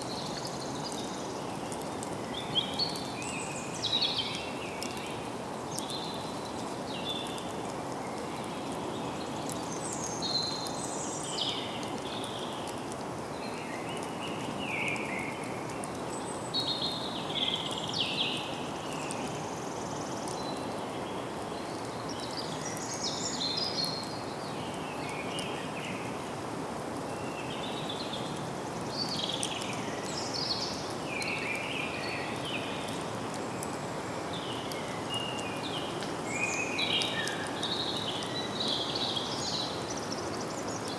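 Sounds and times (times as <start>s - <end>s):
woodland background hiss: 0.0s - 40.9s
birds chirping and warbling: 27.1s - 40.9s.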